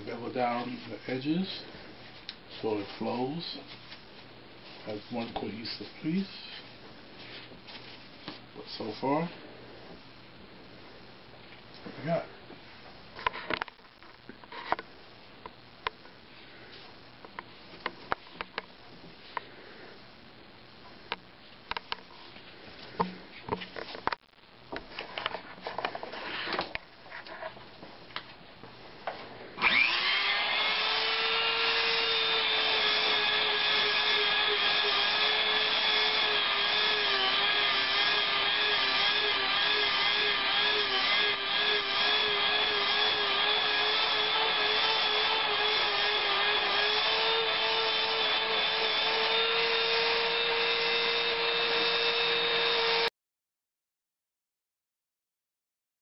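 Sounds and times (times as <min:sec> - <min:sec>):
rotary tool whining: 0:29.6 - 0:53.1.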